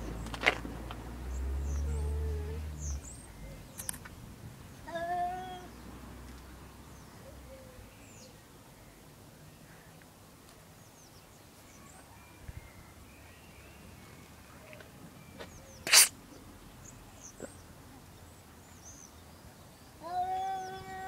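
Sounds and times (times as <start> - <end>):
cat sneezing: 15.8 - 16.2.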